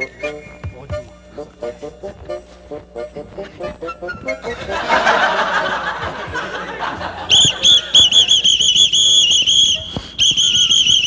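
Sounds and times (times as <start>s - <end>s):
whistle toots: 0.0s - 4.8s, 7.2s - 11.0s.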